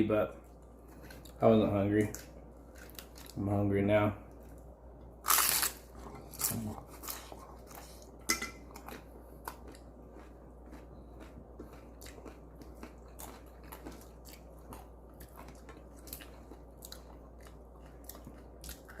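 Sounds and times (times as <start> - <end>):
crunchy chewing: 4.3 - 19.0.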